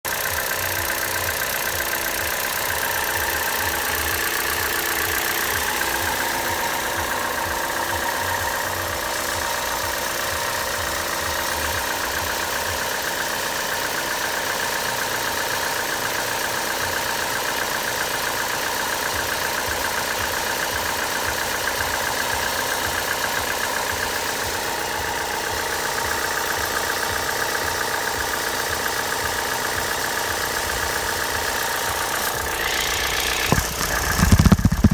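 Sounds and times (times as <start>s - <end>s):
car engine idling: 0.0s - 34.9s
belt drive rattle: 0.1s - 13.6s, 31.6s - 34.9s.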